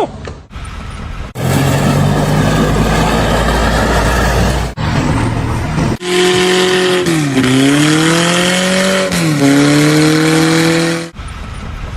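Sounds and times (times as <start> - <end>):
vehicle engine running under load: 0.8 - 7.8
rough engine rumble: 1.3 - 6.4.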